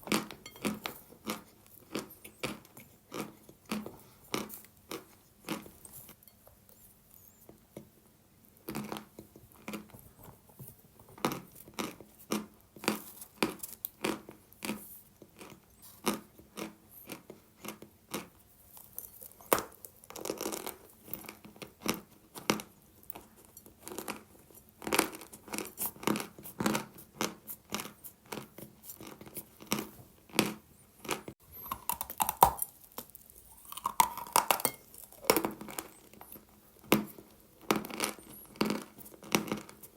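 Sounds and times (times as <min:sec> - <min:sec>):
chalk crunching being chewed: 0:00.1 - 0:06.8, 0:11.2 - 0:39.9.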